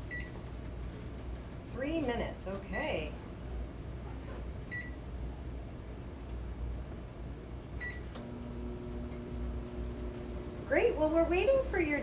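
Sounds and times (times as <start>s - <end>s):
microwave oven humming: 0.0s - 12.0s
microwave keypad beep: 0.1s - 0.3s, 4.7s - 5.0s, 7.8s - 8.0s.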